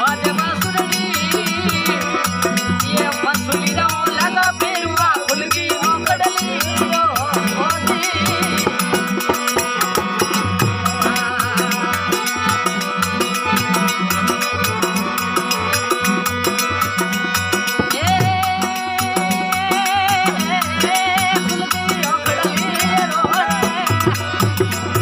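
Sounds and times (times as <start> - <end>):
hand drum beat: 0.0 - 25.0
jingling percussion: 0.0 - 25.0.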